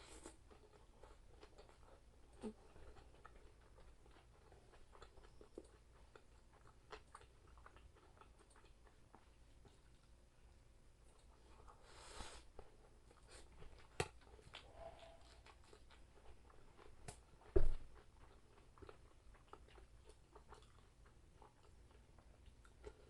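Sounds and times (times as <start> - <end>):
person chewing food: 0.1 - 10.3, 11.0 - 23.0
dull thump: 17.6 - 17.8.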